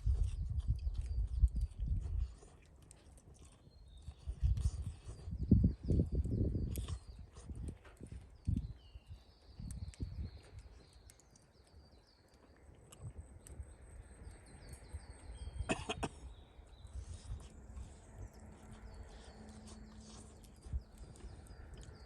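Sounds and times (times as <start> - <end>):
small bird chirping: 0.0 - 22.0
harsh cough-like sound: 15.6 - 16.2.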